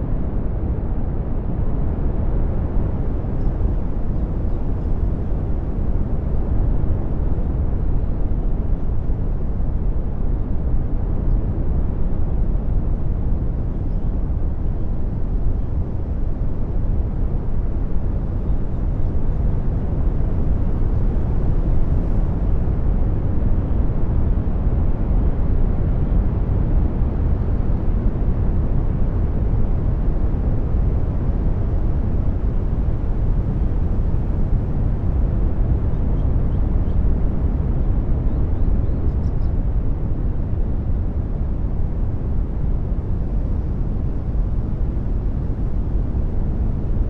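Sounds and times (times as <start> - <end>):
brown noise hiss: 0.0 - 47.0.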